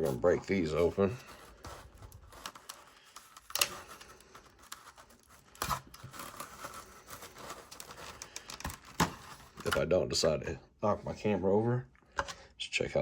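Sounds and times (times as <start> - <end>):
foil wrapper ripping: 0.0 - 9.7
foil wrapper crinkling: 0.0 - 9.8.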